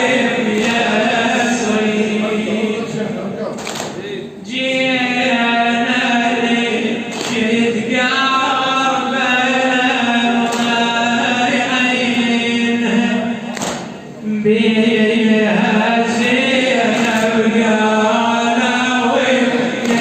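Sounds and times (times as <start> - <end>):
man chanting a lament: 0.0 - 20.0.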